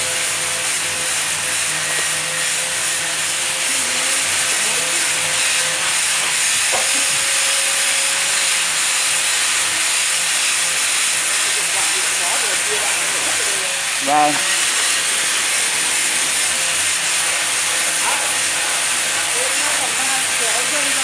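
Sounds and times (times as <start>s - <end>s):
stone-cutting machine hissing: 0.0s - 21.0s.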